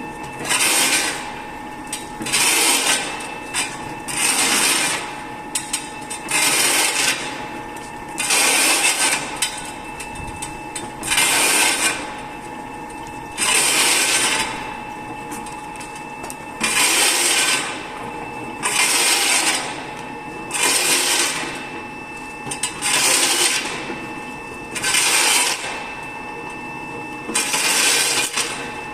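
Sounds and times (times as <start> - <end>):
tyre-cutting machine motor: 0.4 - 1.3, 1.9 - 7.4, 8.2 - 10.4, 11.0 - 12.1, 13.4 - 14.7, 16.6 - 17.9, 18.6 - 21.6, 22.6 - 23.9, 24.8 - 25.8, 27.3 - 28.7.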